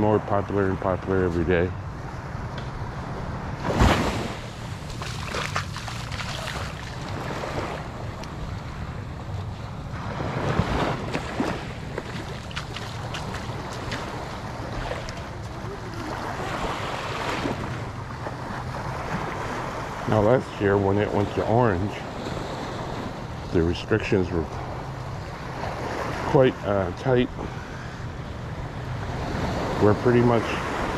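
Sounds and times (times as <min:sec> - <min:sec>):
sea surf washing onto beach: 0:03.6 - 0:08.6, 0:10.0 - 0:24.8, 0:28.8 - 0:30.9.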